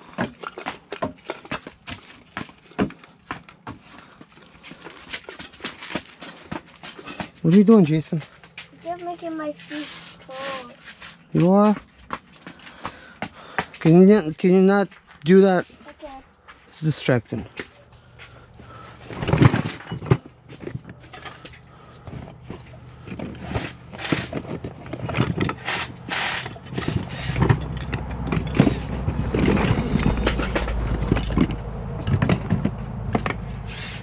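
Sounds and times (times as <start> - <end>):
low mechanical hum: 14.9 - 34.0
hand tools clanking on metal: 19.1 - 34.0.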